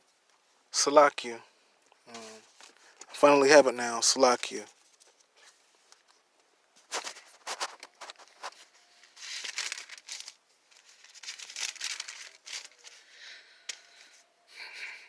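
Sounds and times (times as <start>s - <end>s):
book pages rustling: 2.1s - 3.2s, 4.6s - 14.3s.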